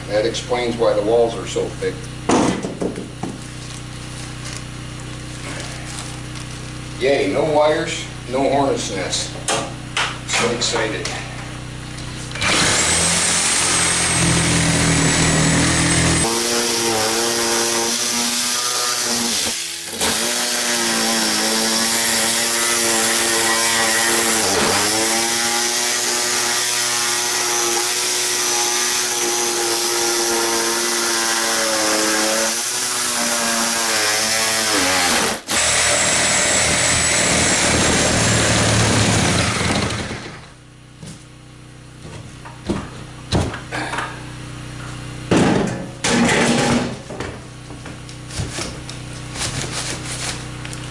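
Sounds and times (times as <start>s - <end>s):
reciprocating saw cutting wall: 12.3s - 40.6s.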